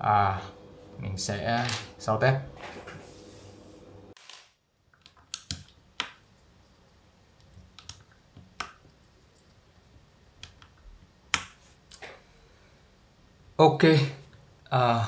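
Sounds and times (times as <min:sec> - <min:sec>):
mechanical keyboard keystrokes: 0:05.0 - 0:06.2.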